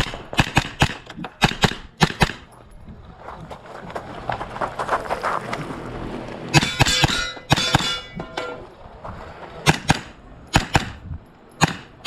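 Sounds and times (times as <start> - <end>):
gunshots: 0.0 - 2.5, 9.6 - 11.0, 11.6 - 12.0
steel targets clanging: 6.5 - 8.8.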